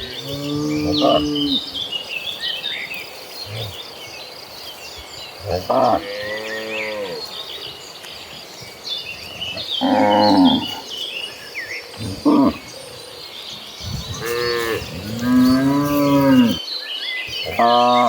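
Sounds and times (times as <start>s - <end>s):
cattle mooing: 14.0s - 16.6s.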